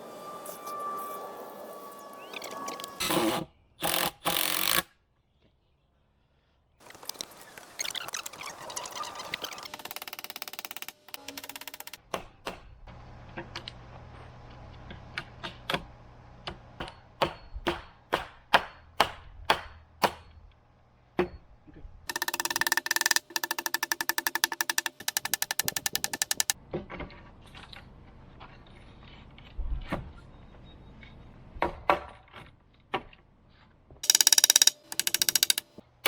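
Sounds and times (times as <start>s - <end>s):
power tool pulsing: 1.8s - 4.9s, 22.1s - 26.6s, 34.0s - 35.7s
hammer striking wood: 9.7s - 12.8s, 16.5s - 20.4s, 22.1s - 26.5s.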